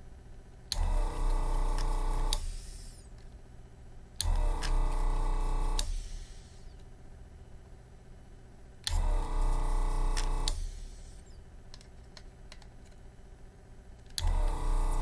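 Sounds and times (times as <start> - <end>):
vacuum pump humming: 0.7 - 3.2, 4.2 - 6.9, 8.8 - 11.9, 14.1 - 15.0.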